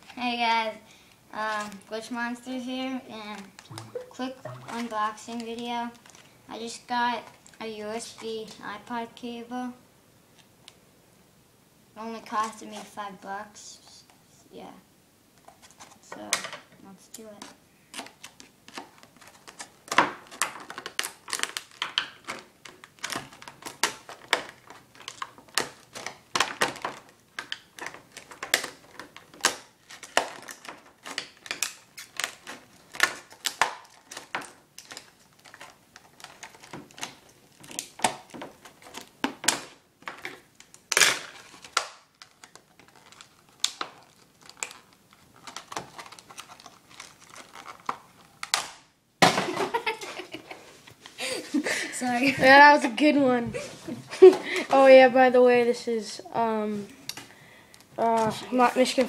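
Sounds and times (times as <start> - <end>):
stiff plastic packaging crackling: 3.2 - 6.4, 17.2 - 48.9, 56.5 - 59.0.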